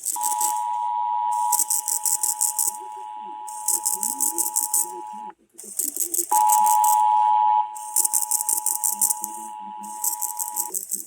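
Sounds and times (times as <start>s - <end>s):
fast high-pitched rattle: 0.0s - 0.6s, 1.4s - 2.9s, 3.5s - 5.0s, 5.6s - 7.0s, 7.8s - 11.0s
two-tone alert signal: 0.0s - 5.3s, 6.0s - 11.0s.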